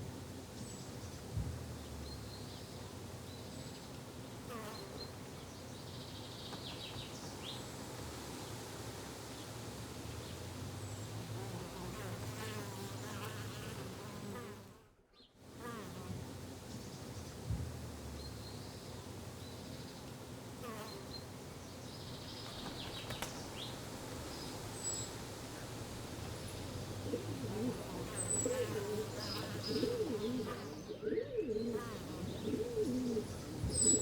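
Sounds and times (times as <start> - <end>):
insects buzzing: 10.3 - 14.9, 15.5 - 34.0.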